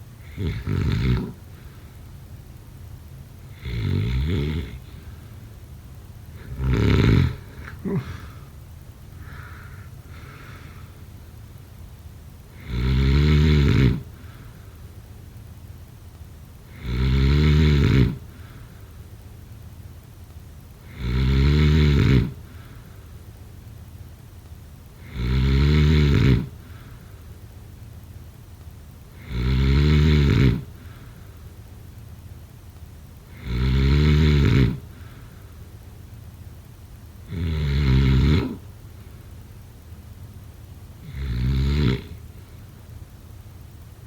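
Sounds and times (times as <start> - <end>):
loud pitched snoring: 0.0 - 1.9, 3.5 - 5.3, 6.3 - 8.5, 12.5 - 14.5, 16.7 - 18.6, 20.8 - 22.7, 25.0 - 27.0, 29.1 - 31.2, 33.3 - 35.3, 37.2 - 38.7, 41.0 - 42.4
faint breath: 1.5 - 2.2, 7.4 - 11.4, 14.1 - 15.0, 18.3 - 19.1, 22.4 - 23.3, 26.6 - 27.4, 30.8 - 31.6, 34.9 - 35.9.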